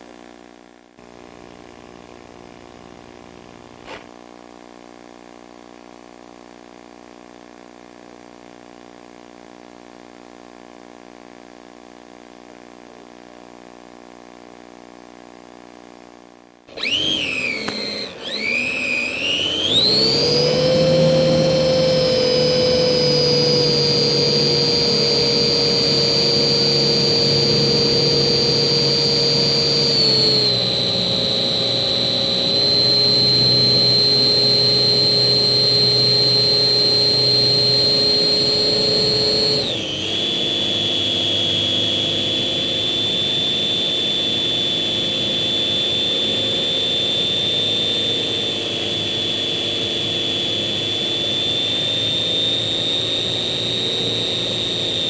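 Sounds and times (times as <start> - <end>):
model plane motor whining: 16.7 - 55.0.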